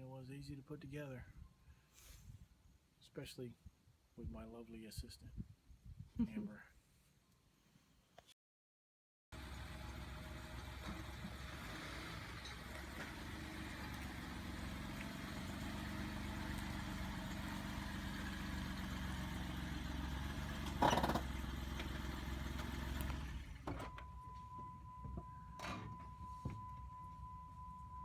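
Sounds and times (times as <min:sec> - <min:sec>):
car engine humming: 0:09.4 - 0:28.0.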